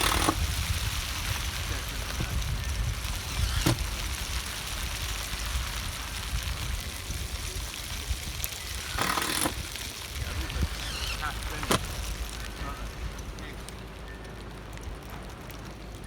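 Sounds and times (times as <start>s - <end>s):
steady rain hiss: 0.0s - 16.0s
wind buffeting microphone: 0.0s - 16.0s
loud noisy burst: 10.2s - 13.6s.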